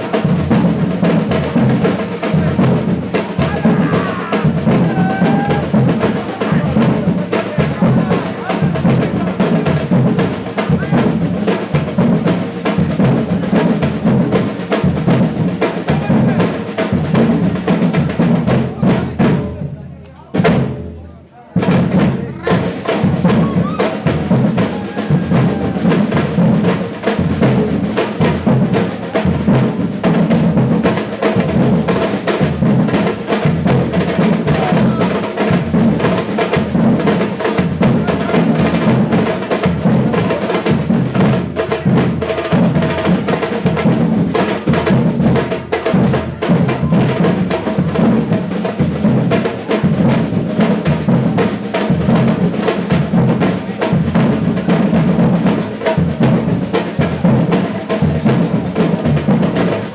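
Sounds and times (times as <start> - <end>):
percussion ensemble drumming: 0.0 - 59.9.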